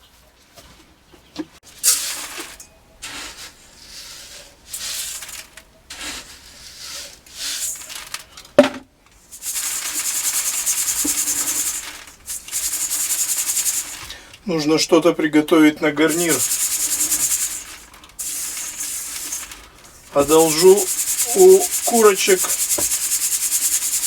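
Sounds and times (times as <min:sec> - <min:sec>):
hand scraping and rubbing: 0:01.6 - 0:14.4, 0:16.0 - 0:24.0
rhythmic scrubbing: 0:09.4 - 0:14.2, 0:15.9 - 0:24.0.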